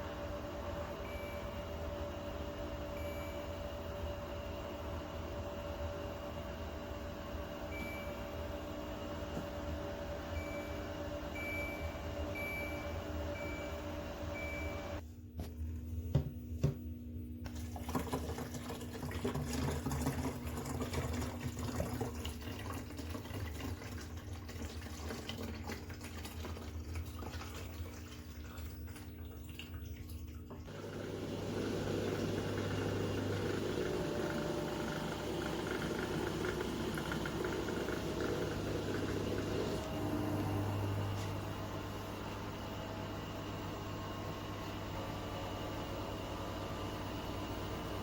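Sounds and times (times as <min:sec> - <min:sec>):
dishwasher machine hum: 0:00.0 - 0:48.0
dishwasher water splashing: 0:17.5 - 0:40.6.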